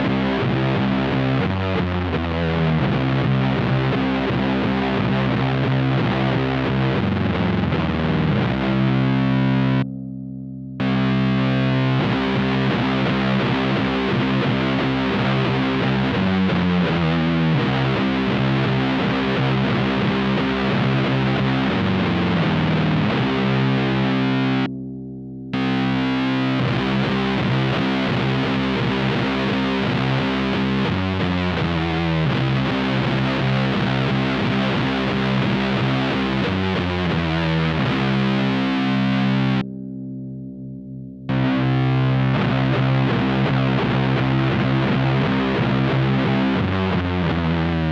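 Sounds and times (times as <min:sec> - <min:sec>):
distorted electric guitar riff: 0:00.0 - 0:47.9.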